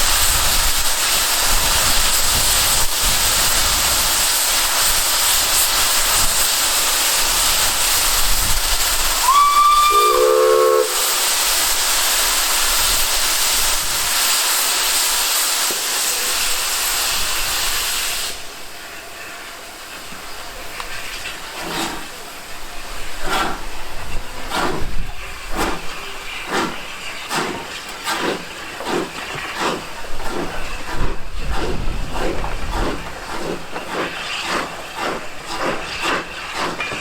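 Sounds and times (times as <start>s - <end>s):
steam hissing: 0.0s - 37.0s
steam whistle blast: 9.2s - 11.4s.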